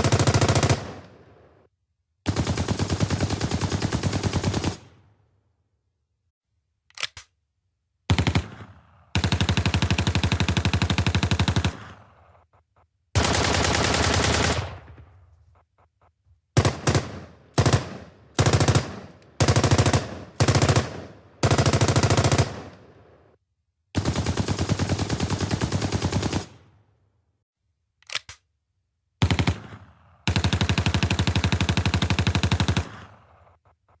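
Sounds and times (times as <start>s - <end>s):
machine gun firing bursts: 0.0s - 1.5s, 2.3s - 5.0s, 8.1s - 12.4s, 13.2s - 15.2s, 16.6s - 23.4s, 24.0s - 26.7s, 29.2s - 33.5s.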